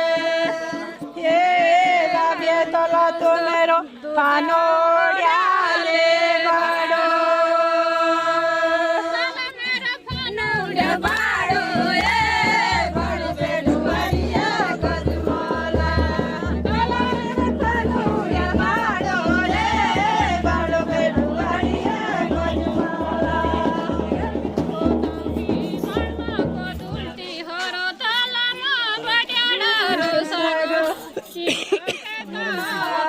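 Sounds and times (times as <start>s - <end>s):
steady drum beat: 0.0s - 2.8s, 9.7s - 27.3s
voices singing folk song: 0.0s - 33.0s.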